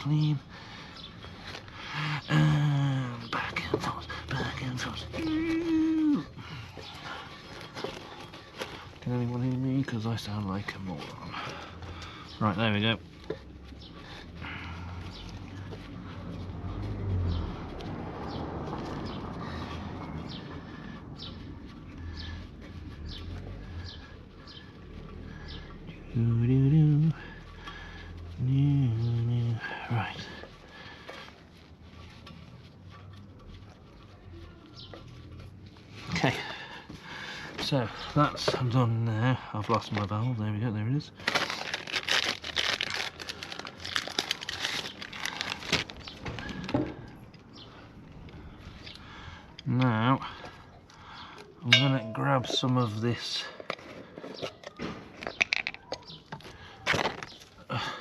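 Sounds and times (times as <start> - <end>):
rustling handling noise: 3.1 - 58.0
packaging crinkling and rustling: 41.0 - 47.0, 53.5 - 57.6.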